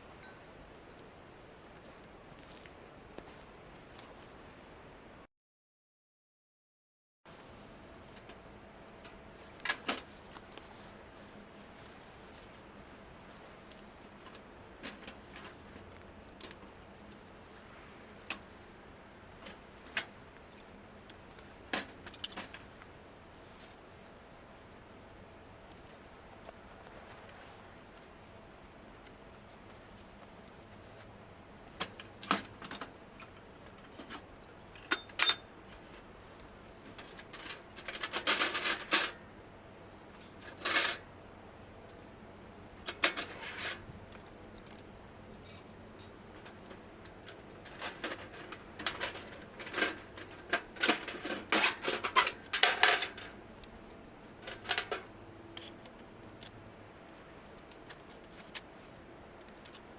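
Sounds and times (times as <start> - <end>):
rustling and scraping: 42.8 - 59.9.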